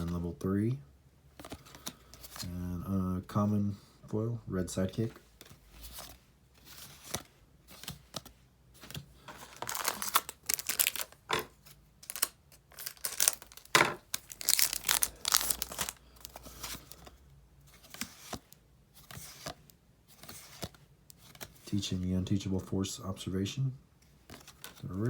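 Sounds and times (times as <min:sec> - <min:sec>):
wrapper tearing and crinkling: 0:09.3 - 0:17.0.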